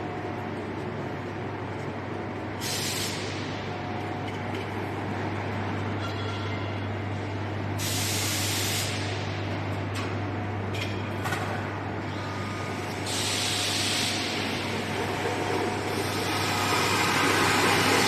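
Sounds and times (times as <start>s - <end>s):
washing machine motor hum: 11.8s - 18.0s.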